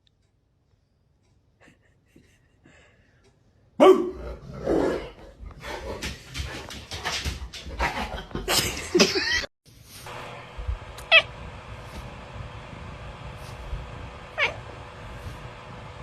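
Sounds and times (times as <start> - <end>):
cat meowing and yowling: 14.4 - 14.6.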